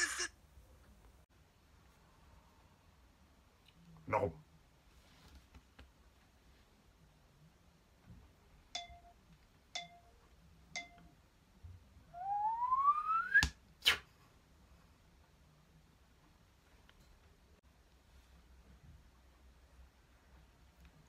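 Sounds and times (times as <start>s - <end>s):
tone rising in pitch: 12.2s - 13.4s.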